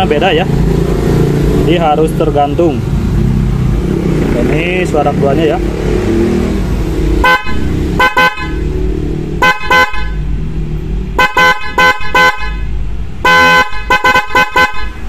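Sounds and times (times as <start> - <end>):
twin-tone horn blasts: 7.2 - 8.7, 9.4 - 10.3, 11.2 - 15.0.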